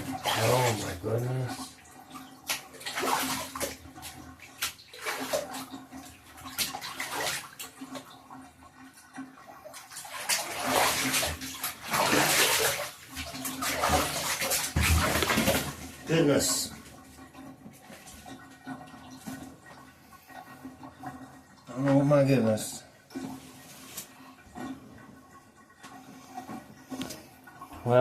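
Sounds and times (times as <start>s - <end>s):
water splashing in a bathtub: 0.0s - 28.0s.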